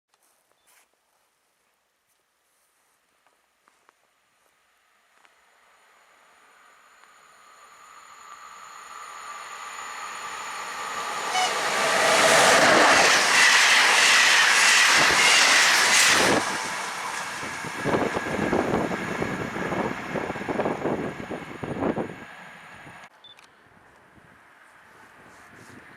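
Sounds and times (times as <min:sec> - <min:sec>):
train passing with high whine: 0:04.7 - 0:23.1.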